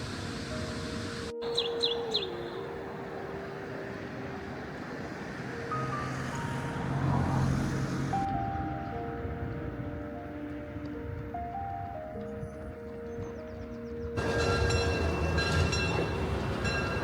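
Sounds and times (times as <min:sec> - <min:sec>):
soft background music: 0:00.0 - 0:17.0
bird chirps: 0:01.4 - 0:02.8.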